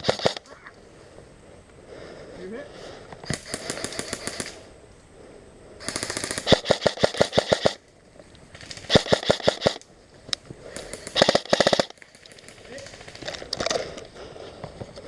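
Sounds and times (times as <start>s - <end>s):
airsoft guns firing bursts: 0.0s - 0.5s, 3.2s - 4.7s, 5.8s - 7.8s, 8.6s - 9.8s, 10.7s - 13.4s.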